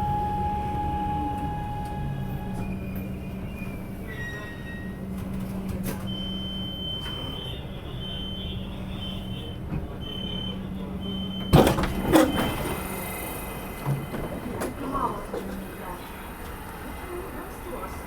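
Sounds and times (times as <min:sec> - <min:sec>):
electronic warning beeps: 0:00.0 - 0:02.6.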